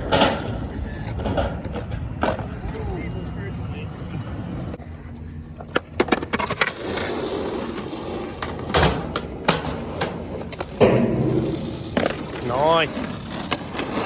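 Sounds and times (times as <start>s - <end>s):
skateboard wheels rolling: 0.0s - 14.0s
skateboard clacks and knocks: 8.3s - 14.0s.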